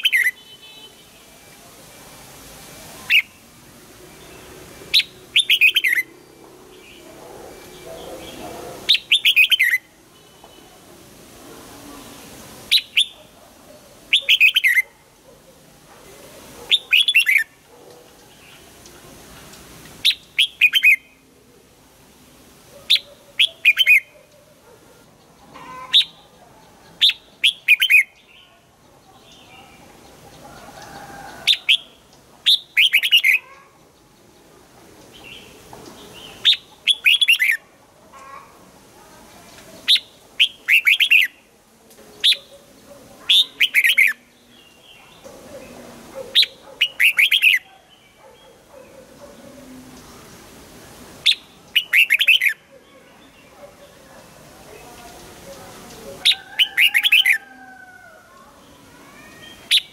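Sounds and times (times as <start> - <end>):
bird singing: 4.2 - 10.6, 16.7 - 17.5.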